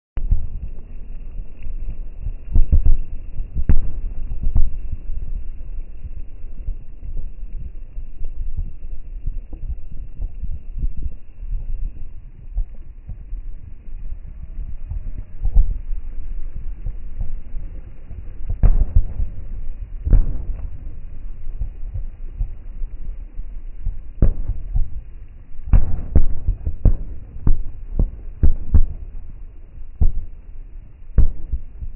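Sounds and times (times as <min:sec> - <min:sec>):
constant low rumble: 0:00.2 - 0:31.9
fireworks booming: 0:02.5 - 0:05.7, 0:09.4 - 0:31.9
sharp firework bangs: 0:03.6 - 0:04.8, 0:18.5 - 0:22.6, 0:24.2 - 0:25.0, 0:25.6 - 0:30.4, 0:31.1 - 0:31.9.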